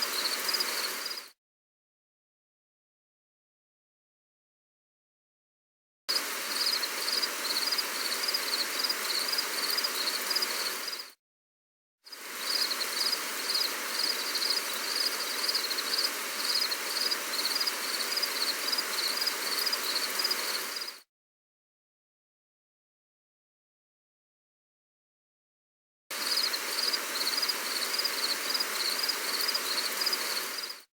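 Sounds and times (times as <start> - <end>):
crickets chirping: 0.0 - 1.3, 6.1 - 11.1, 12.1 - 21.0, 26.2 - 30.9
gentle rain hissing: 0.0 - 1.3, 6.1 - 11.2, 12.1 - 21.0, 26.1 - 30.9.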